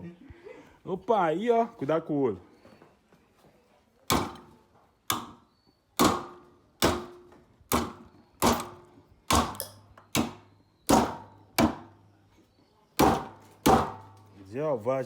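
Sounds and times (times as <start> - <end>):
hammer striking metal: 4.1 - 4.5, 5.1 - 5.4, 6.0 - 12.0, 13.0 - 14.2.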